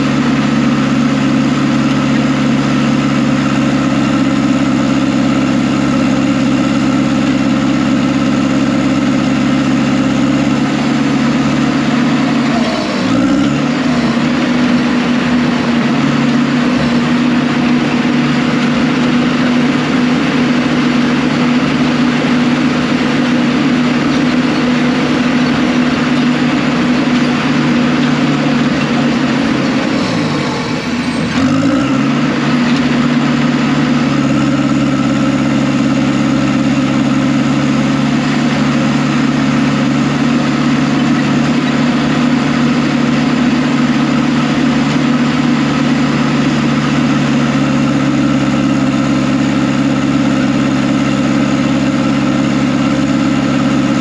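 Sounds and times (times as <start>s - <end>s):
heavy diesel engine running: 0.0s - 54.0s.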